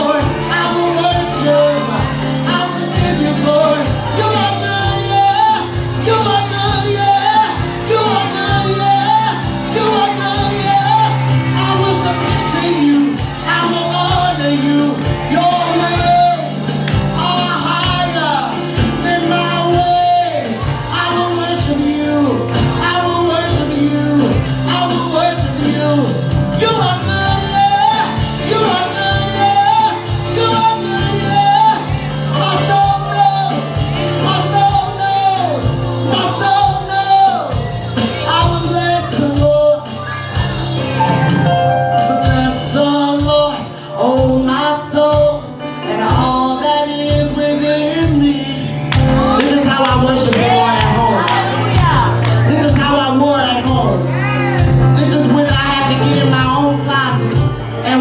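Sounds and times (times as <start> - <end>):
people singing gospel: 0.0 - 40.5, 47.8 - 53.2
band with steady beat: 0.0 - 58.0.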